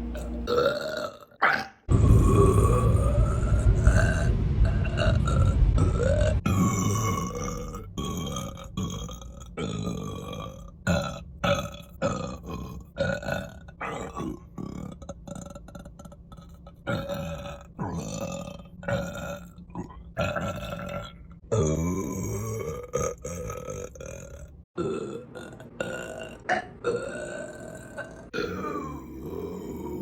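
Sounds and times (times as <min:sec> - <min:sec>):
woman belching: 0:00.2 - 0:03.4, 0:04.8 - 0:30.0.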